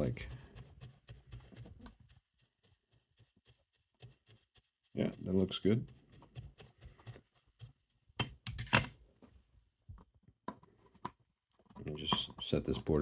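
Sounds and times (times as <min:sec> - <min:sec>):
tools clicking and clinking: 0:08.2 - 0:09.0.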